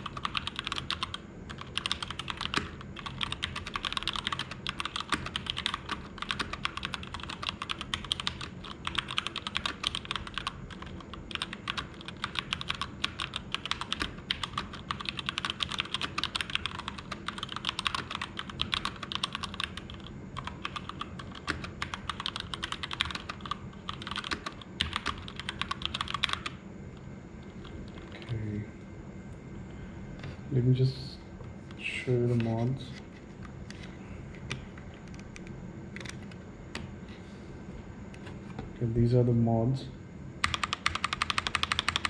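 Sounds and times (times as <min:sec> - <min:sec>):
fast mechanical keyboard typing: 0:00.0 - 0:26.6, 0:40.4 - 0:42.0.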